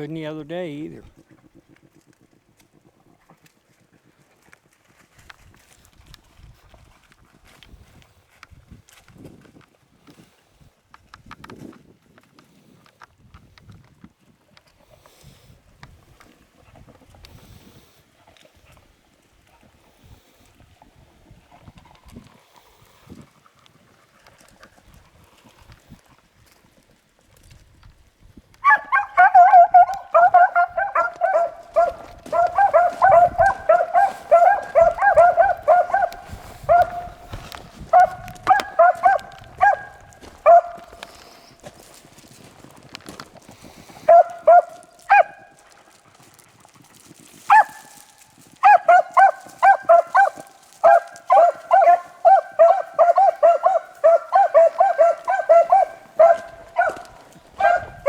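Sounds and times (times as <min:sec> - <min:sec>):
hounds baying: 0:28.6 - 0:41.9, 0:43.7 - 0:46.0, 0:47.4 - 0:58.0
faint rustling: 0:28.6 - 0:58.0.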